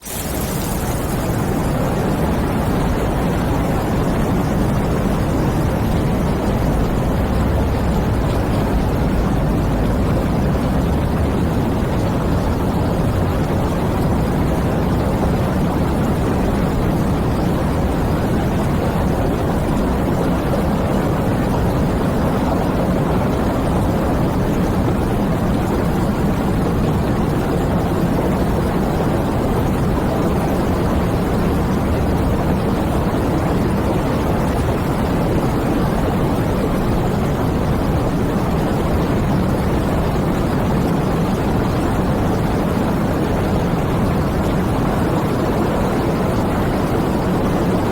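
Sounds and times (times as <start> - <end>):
steady rain falling: 0.0 - 17.0
heavy rain: 0.0 - 47.9.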